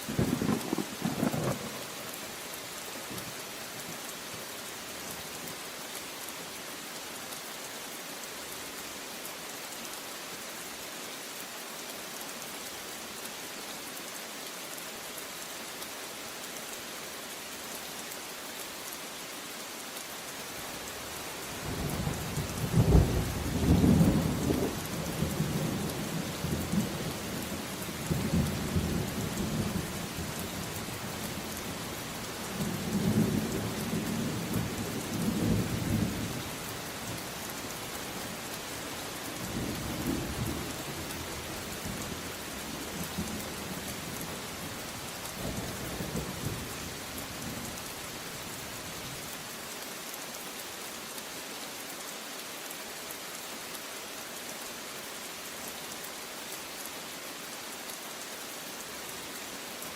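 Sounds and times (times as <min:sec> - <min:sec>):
rain hissing: 0:00.0 - 0:59.9
thunder rumbling: 0:00.1 - 0:01.8.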